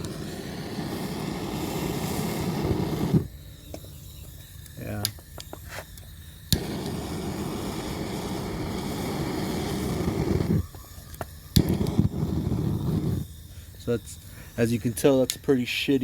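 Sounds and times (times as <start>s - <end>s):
torch flame hissing: 0.0s - 16.0s
torch ignition click: 0.0s - 16.0s.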